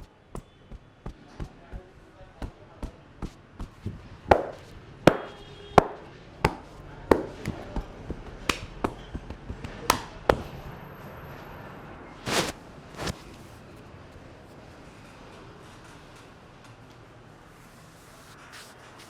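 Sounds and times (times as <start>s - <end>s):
hands slapping on head: 8.4s - 9.0s, 9.6s - 10.5s
hands rubbing: 12.3s - 13.2s.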